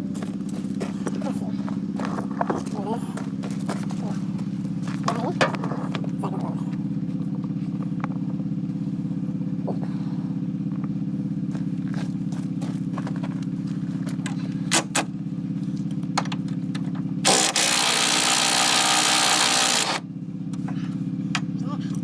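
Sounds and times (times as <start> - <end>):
motor pulsing hum: 0.0 - 22.0
power tool running loudly: 17.2 - 20.1.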